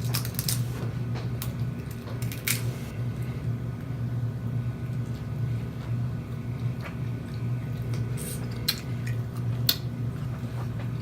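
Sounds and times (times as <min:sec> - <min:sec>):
steady low hum: 0:00.0 - 0:11.0
person chewing and smacking: 0:04.8 - 0:11.0.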